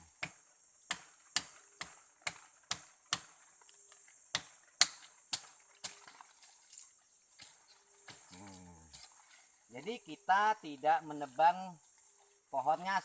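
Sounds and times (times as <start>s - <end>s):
forest insects buzzing: 0.0s - 13.0s
blade chopping into wood: 4.3s - 6.2s.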